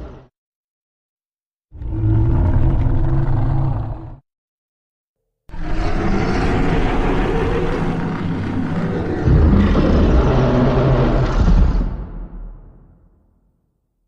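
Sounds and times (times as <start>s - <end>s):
harsh monster roar: 5.5s - 12.4s.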